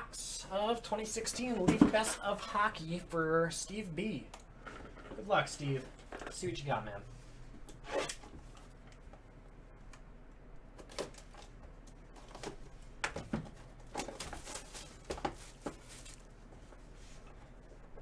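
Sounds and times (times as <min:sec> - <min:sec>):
packaging being handled: 0:13.4 - 0:16.9.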